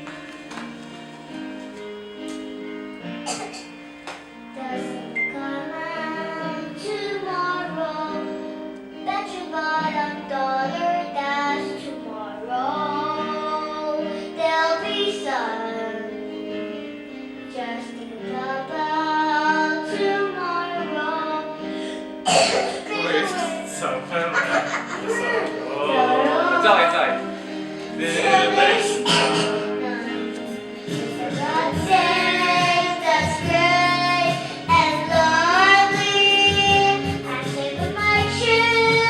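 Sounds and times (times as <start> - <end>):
held instrumental accompaniment: 0.0 - 39.0
high voice singing: 24.9 - 32.9.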